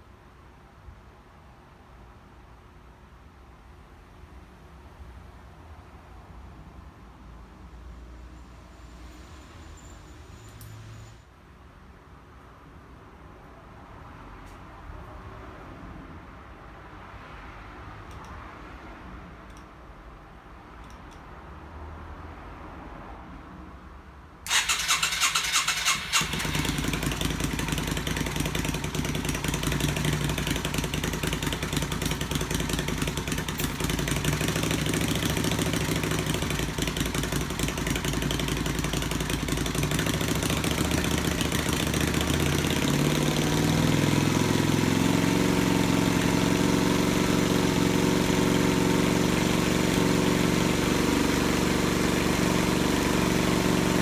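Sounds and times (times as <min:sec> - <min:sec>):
motorcycle engine cranking: 0:24.5 - 0:54.0
motorcycle engine idling: 0:24.5 - 0:54.0.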